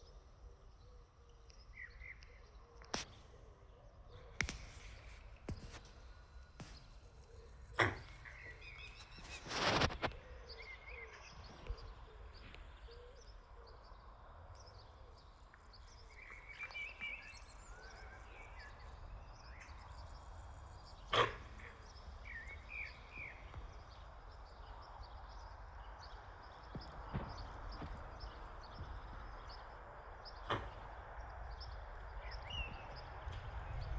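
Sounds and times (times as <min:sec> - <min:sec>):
small birds chirping: 0:00.0 - 0:33.9
sharp click: 0:04.4 - 0:05.8.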